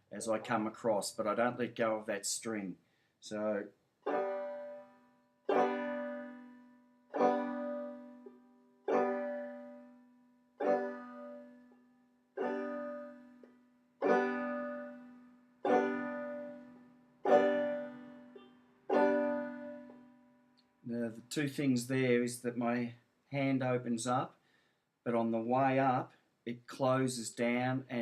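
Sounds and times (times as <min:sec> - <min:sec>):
banjo strumming: 0:04.0 - 0:10.0, 0:10.6 - 0:11.7, 0:12.4 - 0:20.2.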